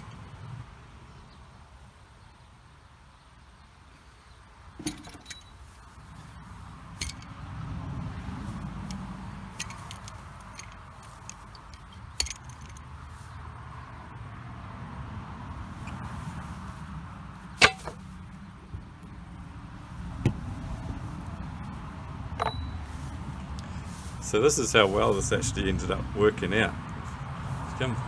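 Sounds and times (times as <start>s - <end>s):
metallic clinks of jack: 4.8s - 5.6s, 7.0s - 7.4s, 9.6s - 12.9s, 17.6s - 18.0s, 22.4s - 22.9s.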